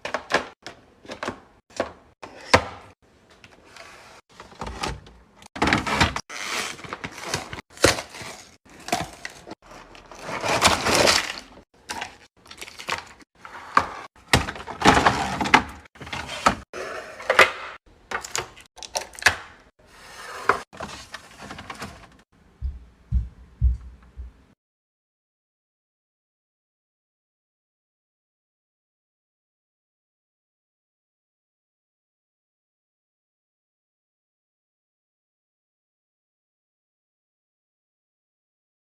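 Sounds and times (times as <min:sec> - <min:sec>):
soft thumps: 0:22.6 - 0:24.5.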